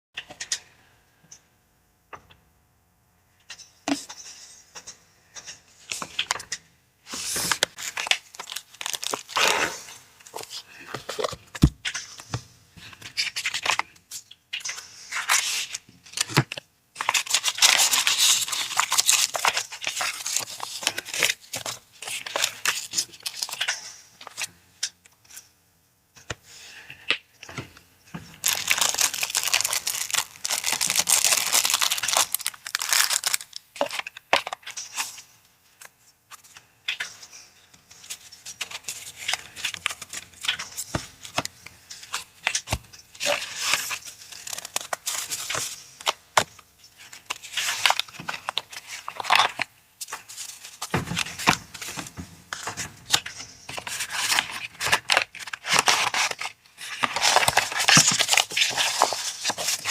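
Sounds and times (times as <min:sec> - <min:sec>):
packaging being torn and crinkled: 0:07.4 - 0:10.5, 0:17.0 - 0:23.6, 0:28.4 - 0:34.6, 0:43.2 - 0:46.2, 0:54.1 - 0:59.9.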